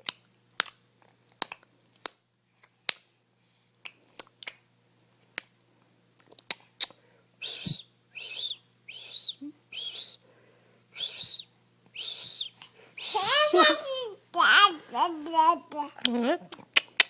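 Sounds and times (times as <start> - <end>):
high breathy baby sounds: 12.0 - 16.0
baby clicking tongue: 16.0 - 17.0.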